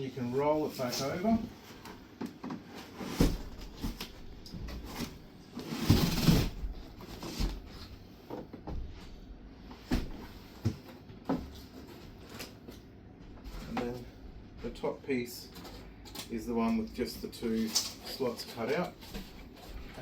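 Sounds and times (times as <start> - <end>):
cardboard scraping: 2.7 - 7.9.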